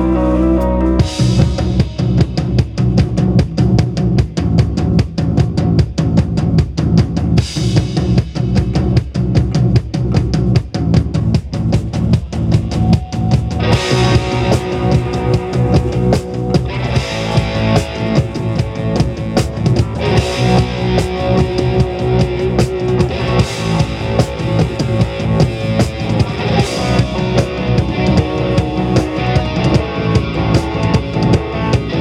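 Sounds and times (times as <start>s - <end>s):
electric guitar: 0.0s - 4.2s, 12.4s - 32.0s
bass guitar: 0.0s - 32.0s
drum kit beat: 1.0s - 32.0s.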